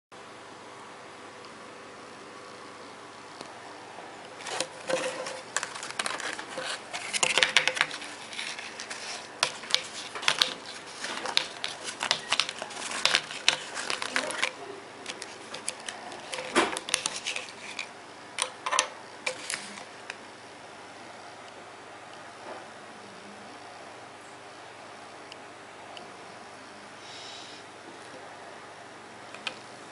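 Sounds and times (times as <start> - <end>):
crinkling rustles: 4.4 - 18.6, 19.2 - 19.9
plastic objects clicking and tapping: 4.4 - 19.6.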